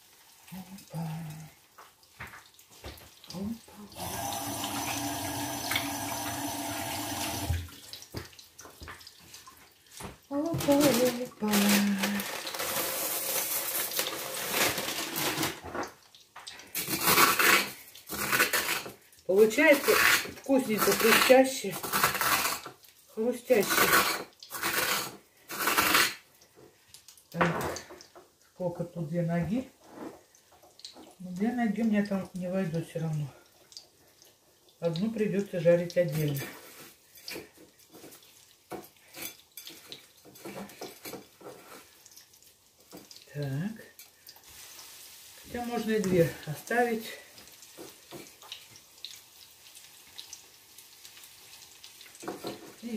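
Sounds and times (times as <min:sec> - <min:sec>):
potatoes sizzling in hot oil: 0:00.0 - 0:52.9
dishes and utensils clattering: 0:36.7 - 0:41.8.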